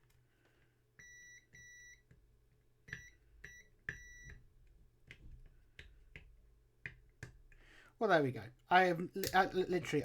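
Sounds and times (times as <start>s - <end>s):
multimeter continuity beeps: 1.0s - 2.1s, 2.8s - 4.4s.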